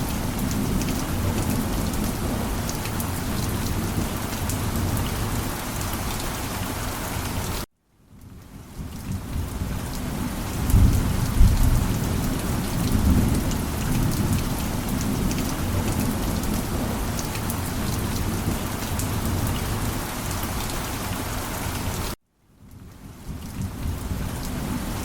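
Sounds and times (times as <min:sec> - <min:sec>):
thunder rumble: 0:00.0 - 0:05.9, 0:08.8 - 0:20.8
rain pattering: 0:00.0 - 0:25.0.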